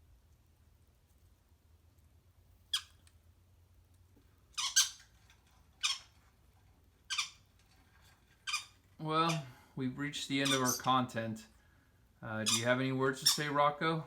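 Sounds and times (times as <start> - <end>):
parrot squawking: 2.7 - 3.0, 4.6 - 5.0, 5.8 - 6.2, 7.1 - 7.4, 8.4 - 9.5, 10.4 - 11.0, 12.4 - 13.6.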